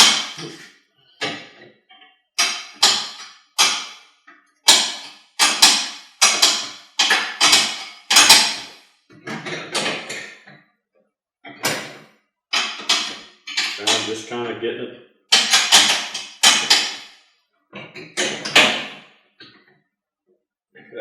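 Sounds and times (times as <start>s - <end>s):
wrench turning a nut: 4.7s - 8.8s.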